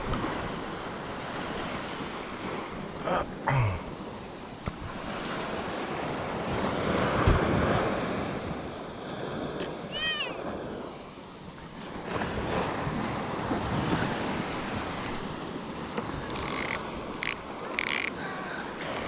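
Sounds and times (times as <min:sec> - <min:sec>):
ocean surf washing on beach: 0:00.0 - 0:19.0
wind buffeting microphone: 0:04.0 - 0:19.0.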